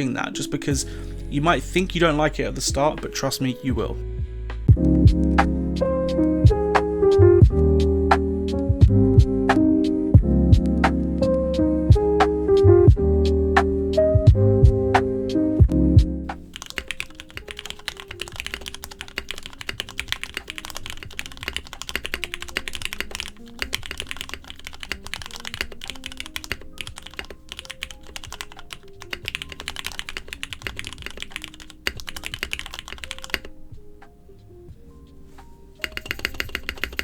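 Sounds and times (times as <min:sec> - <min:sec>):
fast mechanical keyboard typing: 0:16.4 - 0:33.6, 0:35.8 - 0:37.0.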